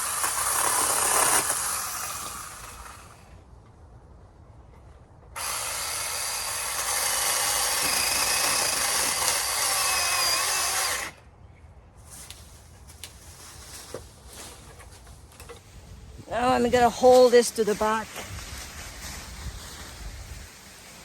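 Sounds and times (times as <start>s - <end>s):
mini chainsaw cutting branch: 0.0s - 3.2s, 5.4s - 11.2s.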